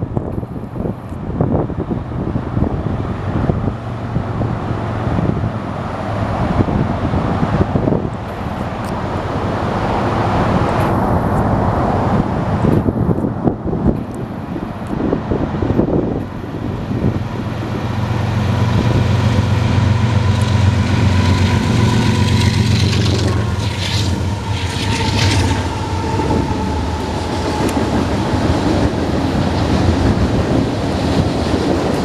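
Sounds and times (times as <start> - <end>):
diesel locomotive drone: 0.0 - 32.0
train wheels clacking over rails: 18.1 - 32.0.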